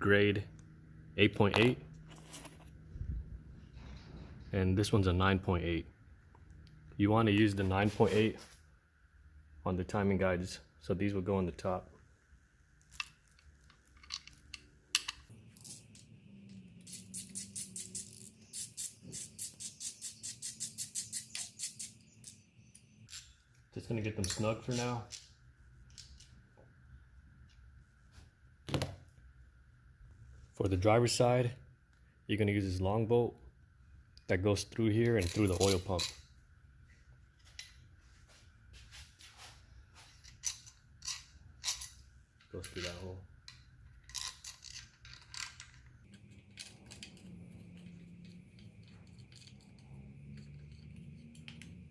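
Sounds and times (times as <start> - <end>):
metal parts clicking: 12.8 - 23.4, 35.1 - 36.3, 40.2 - 51.8.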